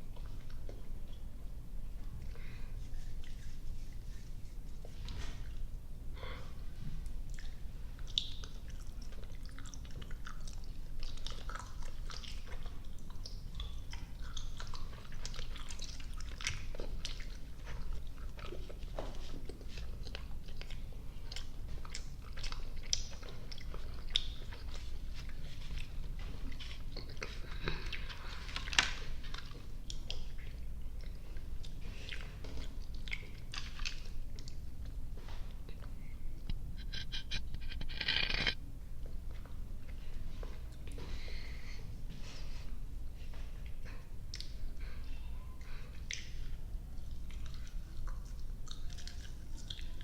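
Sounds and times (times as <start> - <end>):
chewing sticky candy: 7.0 - 35.0, 43.6 - 45.0, 45.6 - 50.0.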